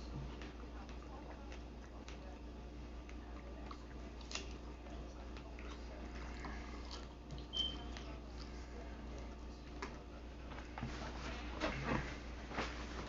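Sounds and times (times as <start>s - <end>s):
steady low hum: 0.0s - 13.0s
person chewing food: 3.0s - 9.9s.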